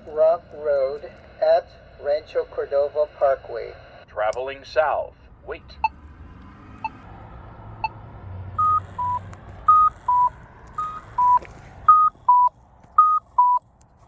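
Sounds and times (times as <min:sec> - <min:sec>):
locator tone click: 0:08.6 - 0:13.6.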